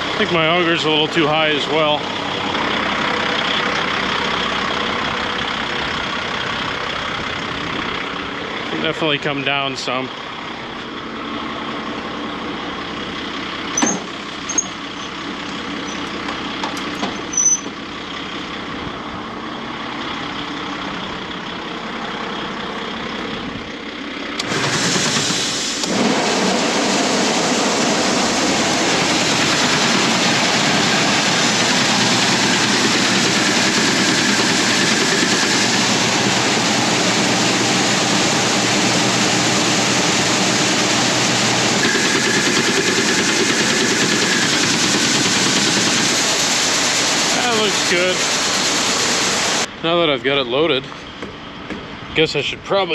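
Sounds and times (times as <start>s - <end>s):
truck engine: 0.0s - 52.9s
grain pouring from auger: 24.4s - 49.7s.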